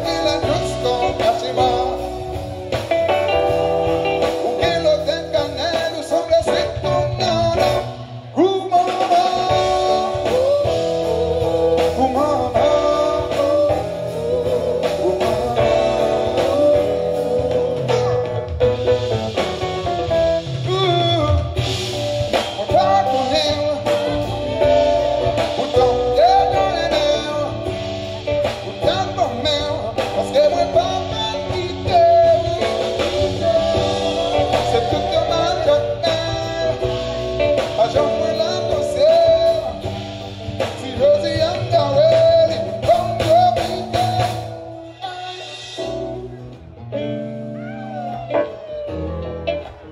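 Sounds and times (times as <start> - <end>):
bass: 0.0 - 49.9
lead guitar melody: 0.0 - 49.9.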